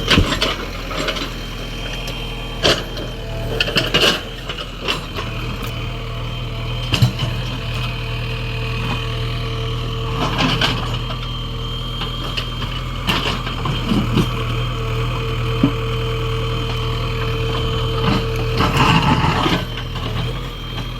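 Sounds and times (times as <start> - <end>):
diesel engine running: 0.0 - 20.9.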